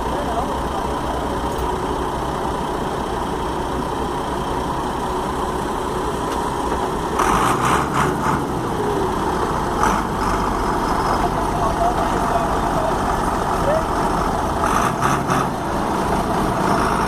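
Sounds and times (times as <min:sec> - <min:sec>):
diesel engines running: 0:00.0 - 0:17.0.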